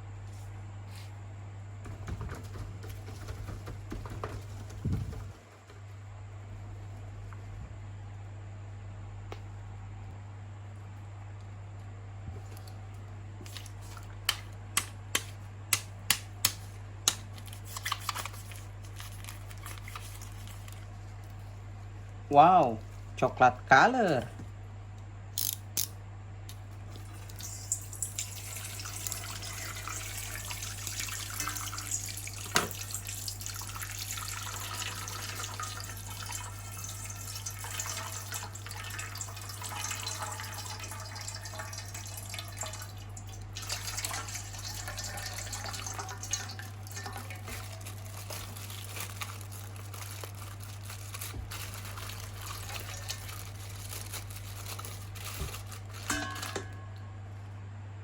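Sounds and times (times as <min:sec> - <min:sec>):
low electrical hum: 0:00.0 - 0:58.0
tap water splashing in a sink: 0:27.0 - 0:48.1.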